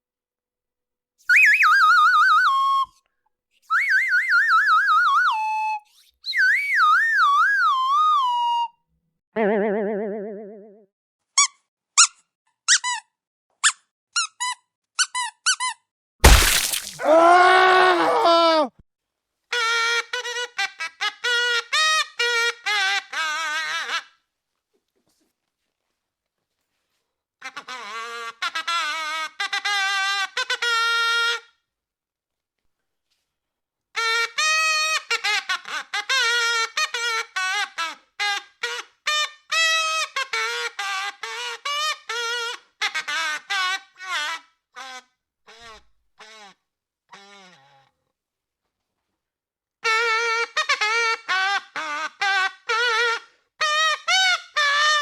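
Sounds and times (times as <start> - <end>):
rubber squeaky toy squeaks: 11.3 - 17.0, 27.4 - 31.5, 34.0 - 48.0, 49.8 - 55.0.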